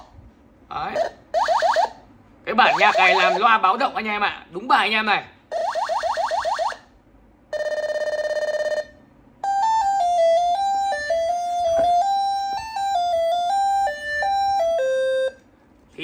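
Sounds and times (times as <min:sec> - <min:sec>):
fast-pulsing alarm tone: 0:00.9 - 0:03.7, 0:05.5 - 0:06.9, 0:07.5 - 0:15.4
electronic beeping melody: 0:02.6 - 0:03.6, 0:07.6 - 0:15.4.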